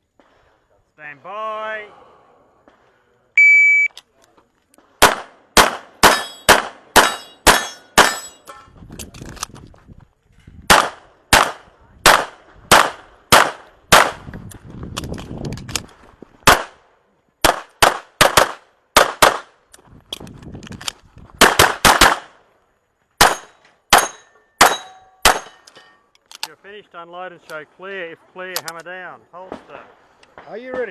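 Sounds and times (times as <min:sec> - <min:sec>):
handgun shots: 0:05.0 - 0:08.4, 0:23.2 - 0:25.6
steel targets clanging: 0:06.0 - 0:08.8, 0:23.3 - 0:26.1.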